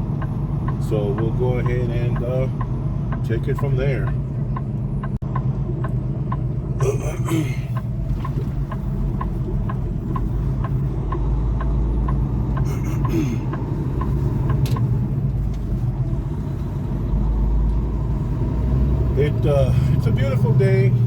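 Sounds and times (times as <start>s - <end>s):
diesel engine running: 0.0s - 21.0s
light regular ticks: 7.7s - 15.8s.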